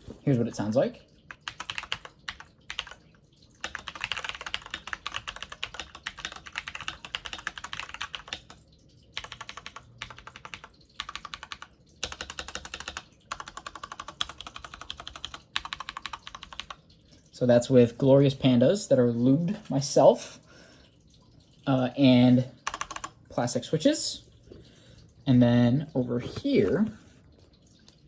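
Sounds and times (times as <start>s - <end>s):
mechanical keyboard typing: 1.4s - 3.0s, 3.6s - 8.6s, 9.2s - 16.8s, 22.6s - 23.2s.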